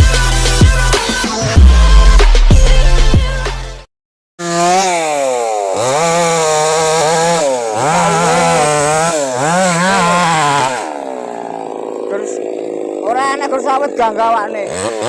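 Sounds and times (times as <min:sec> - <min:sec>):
chainsaw running at high revs: 0:04.4 - 0:15.0.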